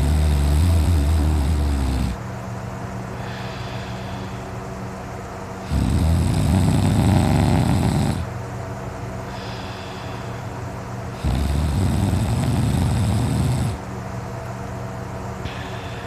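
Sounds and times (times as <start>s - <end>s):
man snoring loudly: 0.0s - 2.2s, 5.6s - 8.3s, 11.1s - 13.8s
quiet breathing: 3.1s - 4.8s, 9.2s - 11.4s, 15.4s - 16.0s.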